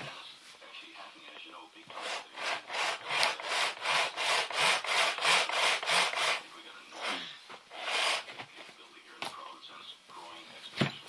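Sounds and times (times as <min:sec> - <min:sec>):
hand saw cutting: 0:01.9 - 0:06.4, 0:07.0 - 0:08.4.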